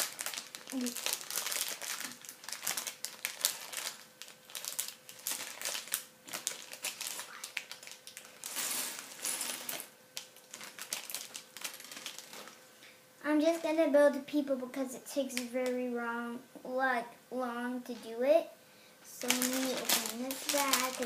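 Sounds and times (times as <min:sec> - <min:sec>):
plastic bag crinkling: 0:00.0 - 0:12.6, 0:19.1 - 0:21.0.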